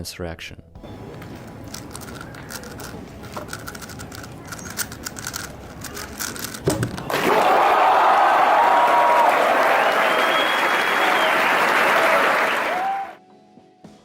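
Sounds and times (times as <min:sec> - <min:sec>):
puzzle cube clicking: 0:01.0 - 0:07.1
crowd cheering and applause: 0:07.0 - 0:13.2.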